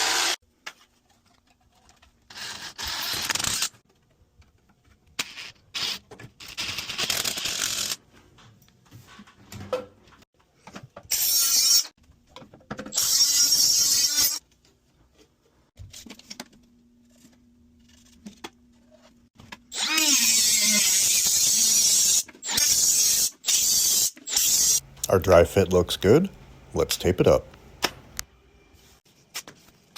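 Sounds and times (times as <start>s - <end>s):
power drill driving screws: 0.0s - 0.4s.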